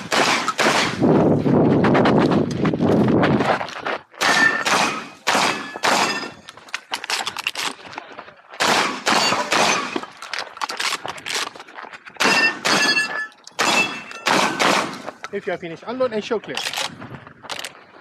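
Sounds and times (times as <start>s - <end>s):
shotgun shots: 0.0s - 1.0s, 4.2s - 6.4s, 8.6s - 10.1s, 12.2s - 15.2s
steel targets ringing: 4.3s - 6.5s, 12.2s - 14.6s.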